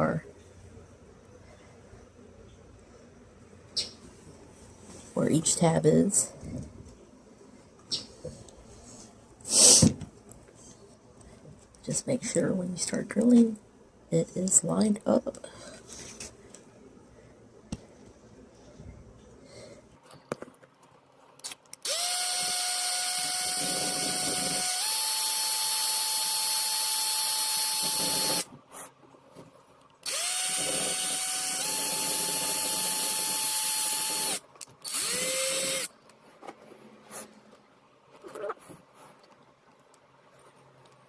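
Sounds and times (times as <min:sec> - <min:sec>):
electric drill whining: 0:21.8 - 0:28.5, 0:30.0 - 0:35.9.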